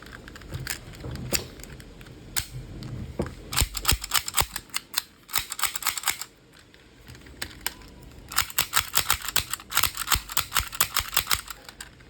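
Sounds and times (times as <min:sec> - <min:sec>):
toy pistol parts clicking: 0:03.5 - 0:12.0.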